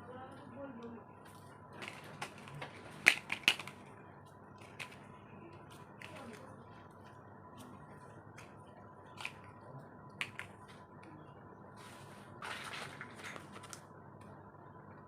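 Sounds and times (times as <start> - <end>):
toy pieces clicking and tapping: 1.8 - 3.8.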